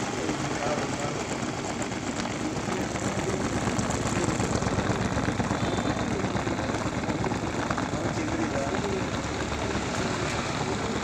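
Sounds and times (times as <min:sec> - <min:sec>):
motor running with rattle: 0:00.0 - 0:11.0.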